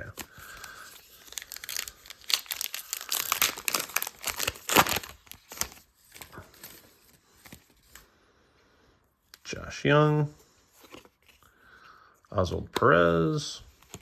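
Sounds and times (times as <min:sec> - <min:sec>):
wrapper tearing and crinkling: 0:00.0 - 0:07.0.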